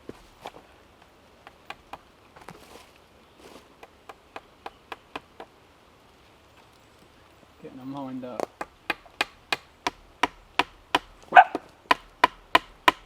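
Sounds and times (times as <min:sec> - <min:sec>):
rapid wooden taps: 0:08.4 - 0:13.0.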